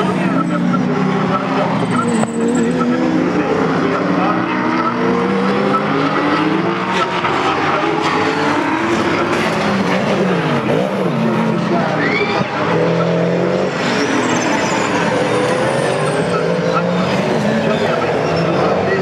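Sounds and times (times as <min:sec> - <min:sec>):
racing car engines passing: 0:00.0 - 0:19.0
tyre squeal: 0:00.1 - 0:03.4, 0:11.7 - 0:19.0.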